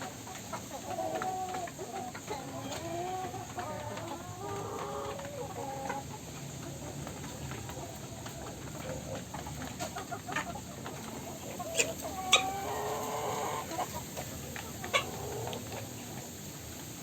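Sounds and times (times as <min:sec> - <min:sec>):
chickens clucking: 0:00.0 - 0:17.0
long drawn-out chicken call: 0:09.9 - 0:16.2.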